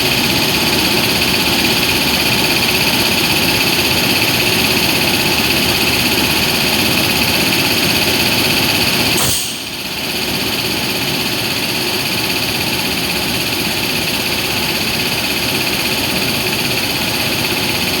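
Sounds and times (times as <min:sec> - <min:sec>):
electric locomotive humming: 0:00.0 - 0:12.8
click: 0:09.2 - 0:09.8.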